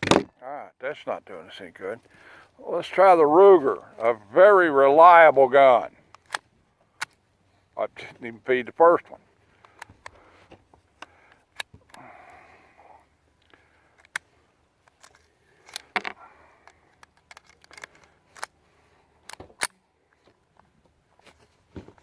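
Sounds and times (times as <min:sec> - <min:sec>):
pistol action clicking: 0:06.1 - 0:06.4, 0:16.6 - 0:18.6
rustle: 0:09.2 - 0:22.0.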